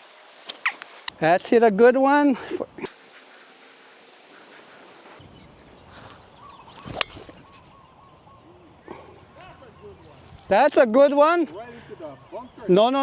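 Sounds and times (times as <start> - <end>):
faint bird calls: 2.8 - 10.5
wind noise on microphone: 4.6 - 8.4
golf club striking ball: 6.8 - 7.7.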